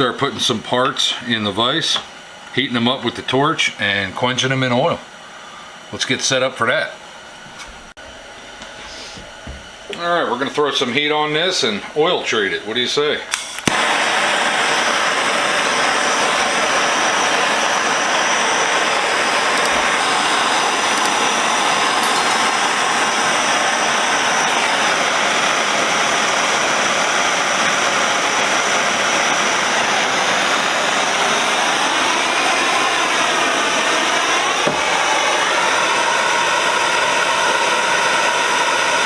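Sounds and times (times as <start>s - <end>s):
gas torch hissing: 10.6s - 39.0s.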